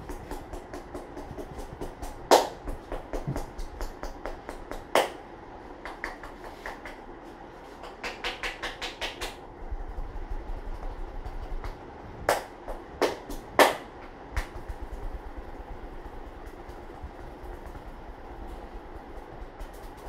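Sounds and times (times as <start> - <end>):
hands tapping on a head: 0.0 - 5.2, 5.8 - 7.0, 7.8 - 9.4, 14.4 - 14.8
loud hand slaps: 7.8 - 9.4, 11.6 - 14.6.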